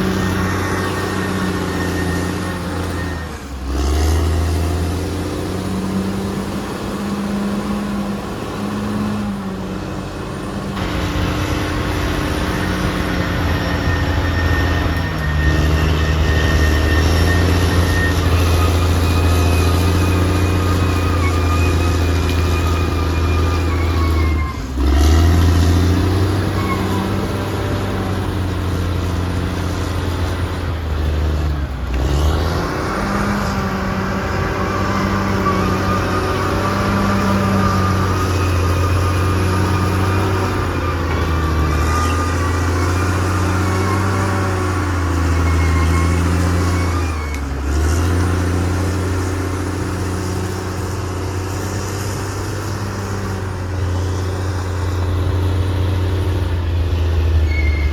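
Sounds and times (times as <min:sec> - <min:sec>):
bulldozer diesel engine running: 0:00.0 - 0:57.9.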